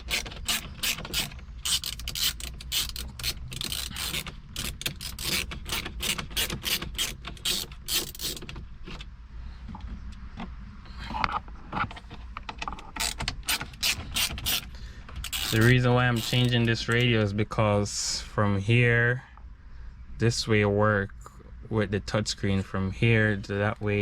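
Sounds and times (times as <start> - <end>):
screwdriver clicking: 15.2 - 16.6.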